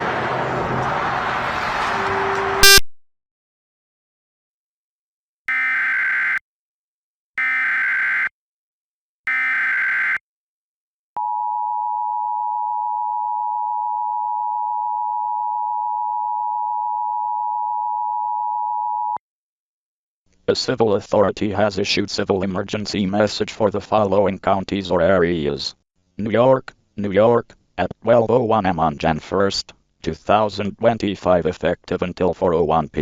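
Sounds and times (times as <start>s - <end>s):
two-tone alert signal: 2.2s - 2.9s.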